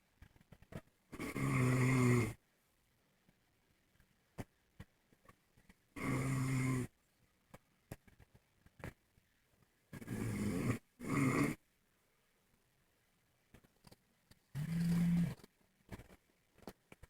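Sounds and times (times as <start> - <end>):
man snoring loudly: 1.2 - 2.4, 6.0 - 6.9, 10.0 - 11.6.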